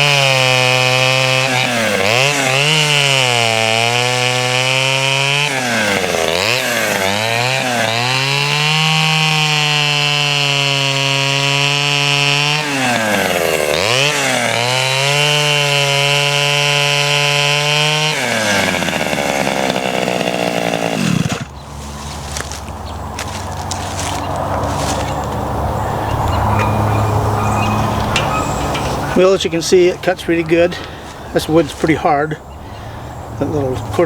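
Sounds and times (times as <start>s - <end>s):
chainsaw cutting wood: 0.0s - 25.4s.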